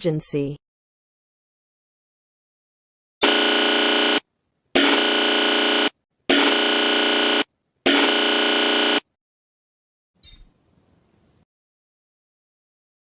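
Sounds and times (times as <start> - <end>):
harsh electronic alarm buzzes: 3.2 - 4.2, 4.8 - 9.1.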